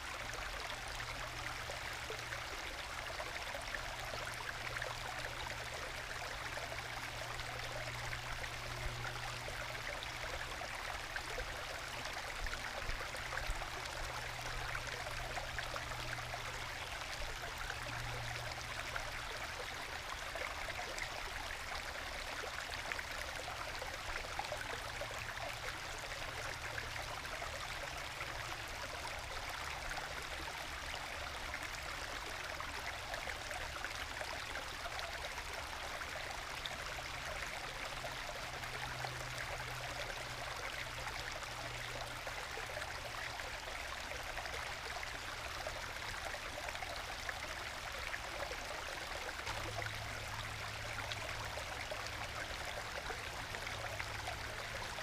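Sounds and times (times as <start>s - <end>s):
stream babbling and gurgling: 0.0s - 55.0s.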